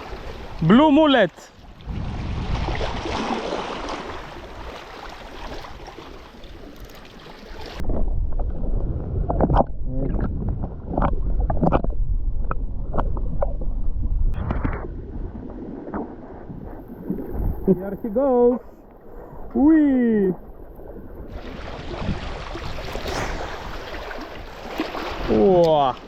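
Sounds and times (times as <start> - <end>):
sea water sloshing: 0.0 - 11.9, 20.4 - 26.0
wind buffeting microphone: 1.6 - 4.8, 7.8 - 25.6
deep rumble: 7.8 - 17.8, 22.7 - 24.9.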